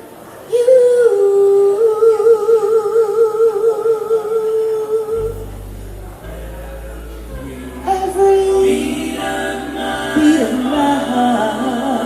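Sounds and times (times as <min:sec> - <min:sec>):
woman singing with vibrato: 0:00.5 - 0:05.5, 0:07.4 - 0:12.0
low sustained bass notes: 0:05.1 - 0:12.0.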